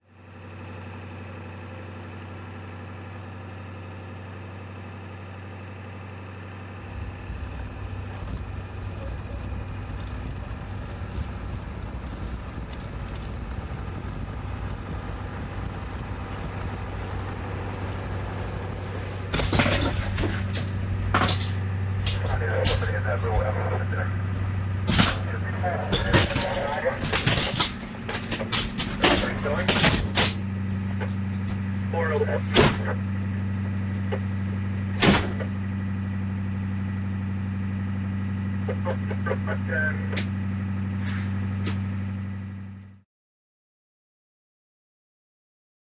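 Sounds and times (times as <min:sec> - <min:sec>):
vehicle engine idling: 0:00.0 - 0:43.0
deep rumble: 0:06.8 - 0:38.6.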